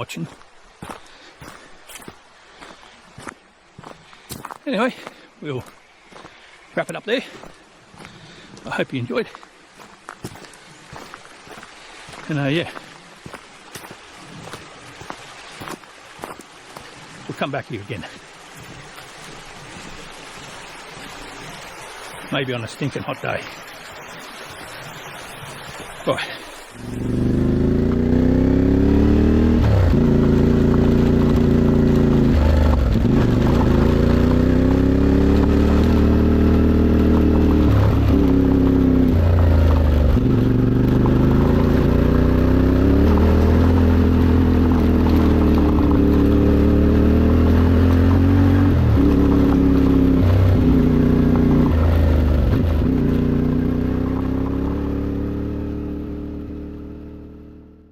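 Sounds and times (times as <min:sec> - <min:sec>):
motorcycle engine accelerating: 0:26.8 - 0:57.9.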